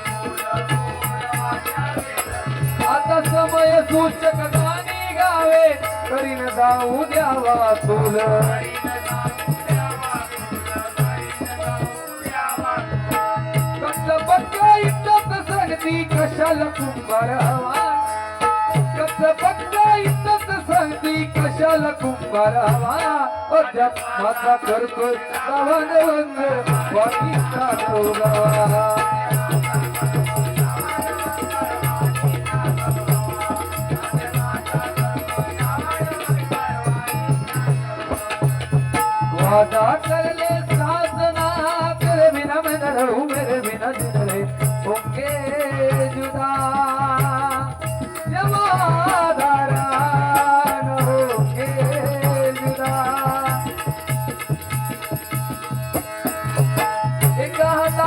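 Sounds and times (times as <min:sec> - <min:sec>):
steady drum beat: 0:00.0 - 0:12.4, 0:26.7 - 0:58.0
shaken jingling percussion: 0:26.4 - 0:58.0.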